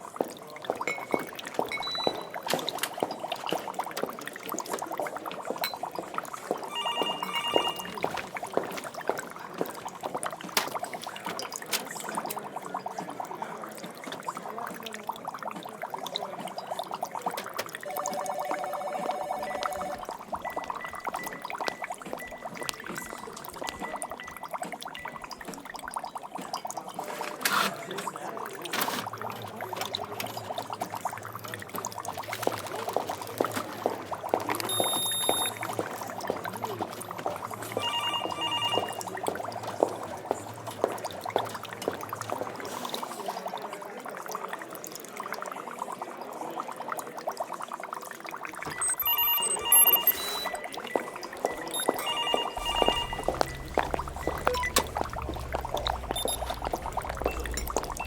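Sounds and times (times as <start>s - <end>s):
liquid bubbling and pouring: 0.0s - 58.0s
short electronic beeps: 1.7s - 2.4s, 6.7s - 8.1s, 17.9s - 24.4s, 34.7s - 35.6s, 37.7s - 39.2s, 48.7s - 58.0s.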